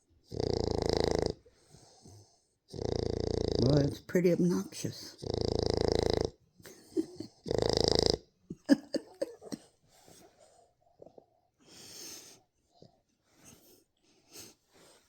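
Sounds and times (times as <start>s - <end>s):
dog snoring: 0.0s - 10.2s.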